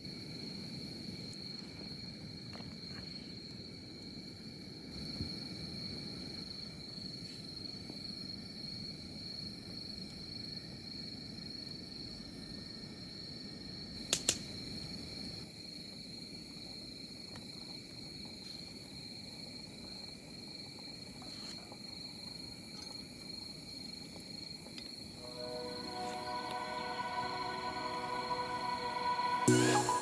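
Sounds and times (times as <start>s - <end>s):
crickets trilling: 0.0s - 29.4s
sharp clicks: 14.1s - 14.4s.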